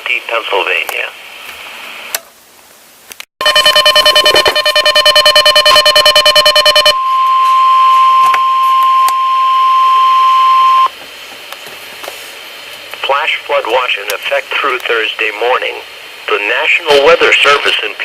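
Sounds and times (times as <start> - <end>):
steady warning alarm tone: 3.4 - 10.9
weather radio alarm beeping: 3.4 - 10.9.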